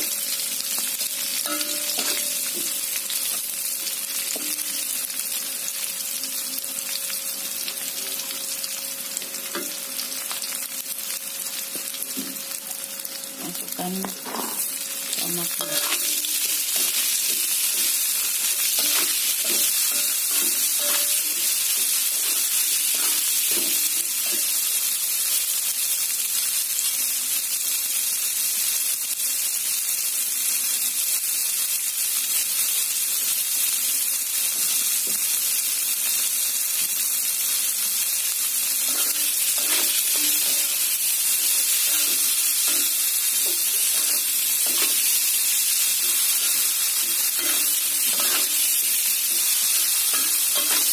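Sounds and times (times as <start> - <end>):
food sizzling in a pan: 0.0 - 50.9
spatula scraping and knocking pan: 15.6 - 24.6, 38.9 - 40.8, 41.8 - 45.1, 46.0 - 50.9.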